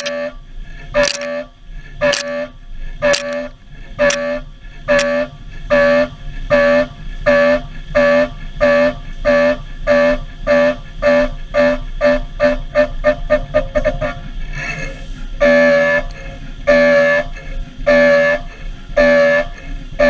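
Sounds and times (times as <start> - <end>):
milling cutter whine: 1.0 - 1.3, 3.1 - 3.4
sharp click of cuts: 1.0 - 1.3, 2.1 - 2.3, 3.1 - 3.4.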